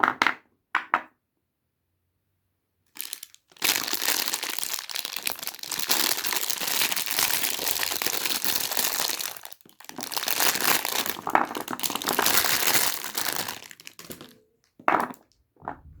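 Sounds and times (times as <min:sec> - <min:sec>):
soap wrapper crinkling: 0:02.9 - 0:15.4.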